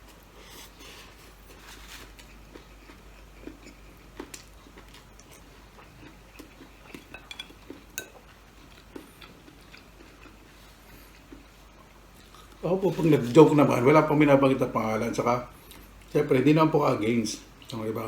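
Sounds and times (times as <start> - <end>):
chewing and mouth sounds: 1.5 - 12.6
cutlery and dishes clicking: 7.1 - 8.2.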